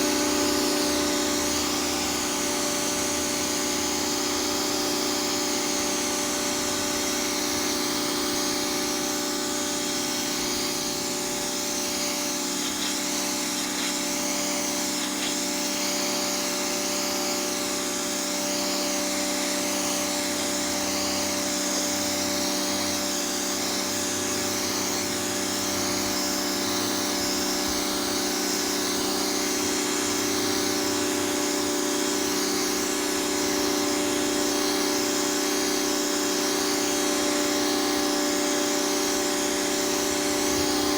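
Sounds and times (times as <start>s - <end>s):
pressure washer motor whine: 0.0s - 40.9s
water jet spraying pavement: 0.0s - 40.9s.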